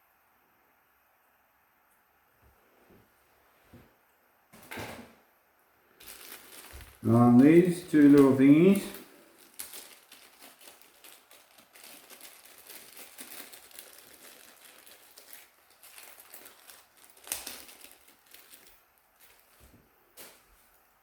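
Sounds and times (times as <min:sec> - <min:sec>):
plastic packaging crinkling: 0:05.9 - 0:20.9.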